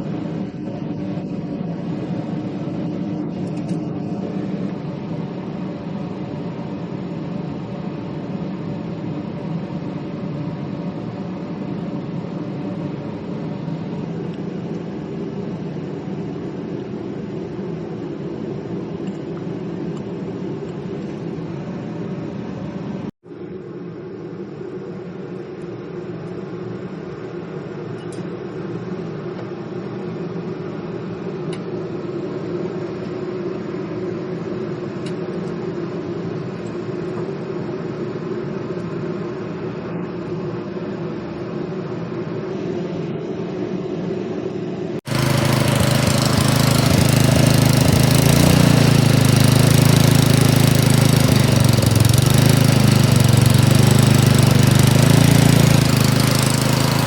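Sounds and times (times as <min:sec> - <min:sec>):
harsh loud engine sound: 0:00.0 - 0:10.2, 0:44.9 - 0:57.0
snowblower engine running: 0:45.1 - 0:57.0.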